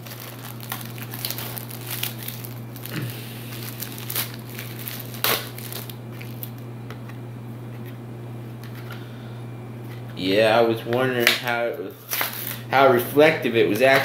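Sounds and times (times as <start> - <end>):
packaging crinkling: 0.0 - 6.7, 12.0 - 12.6.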